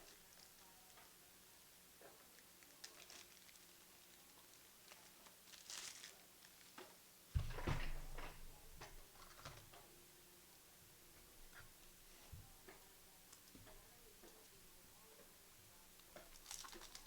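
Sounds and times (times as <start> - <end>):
soft thump: 7.4 - 9.0
cards clicking and rustling: 16.2 - 17.0.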